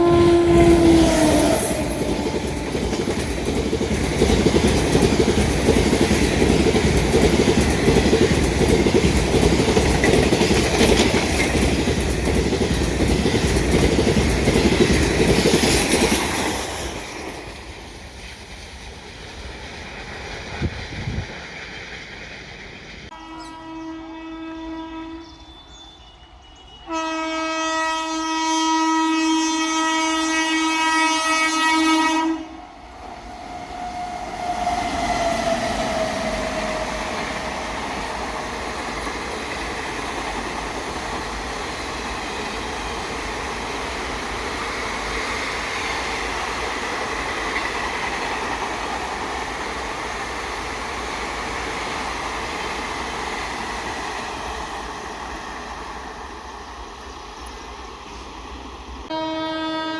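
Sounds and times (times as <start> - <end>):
train horn long blast: 0.0 - 3.1, 23.1 - 32.8, 59.1 - 59.9
train wheels on rails passing: 0.0 - 59.9.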